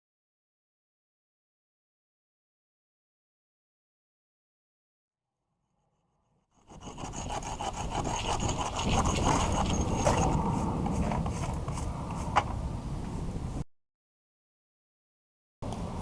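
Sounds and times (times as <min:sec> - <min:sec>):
tool scraping mortar off brick: 0:06.6 - 0:12.4.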